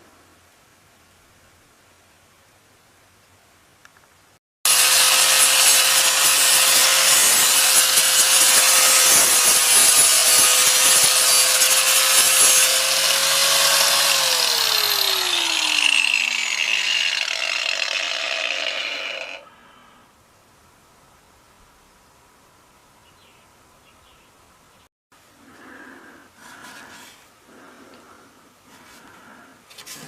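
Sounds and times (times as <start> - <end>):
power tool motor whine: 4.7 - 19.5.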